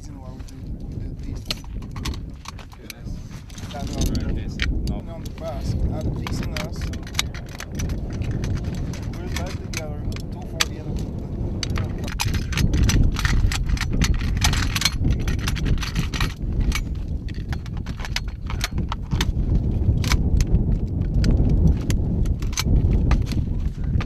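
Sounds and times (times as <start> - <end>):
steady low rumble: 0.0 - 24.0
metal gun parts clicking: 1.4 - 19.3, 20.0 - 23.5.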